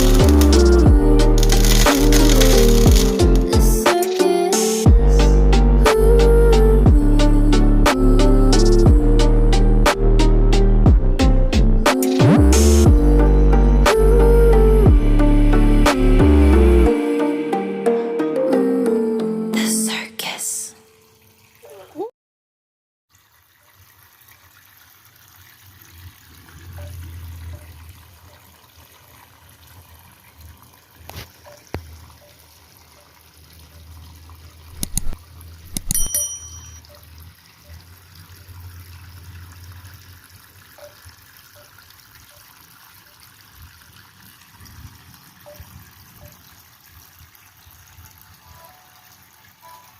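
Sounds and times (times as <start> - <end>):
low hum: 0.0 - 3.8
water trickling: 0.0 - 4.8, 20.9 - 22.0, 23.1 - 49.9
sharp clicks or knocks: 34.8 - 36.4.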